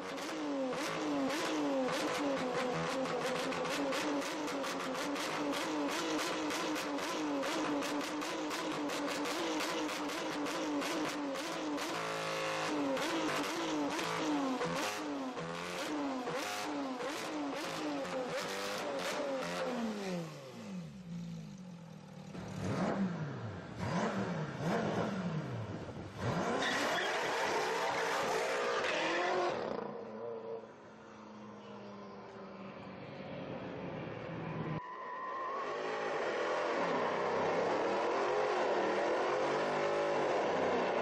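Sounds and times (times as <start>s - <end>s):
car engine revving: 22.3s - 27.0s.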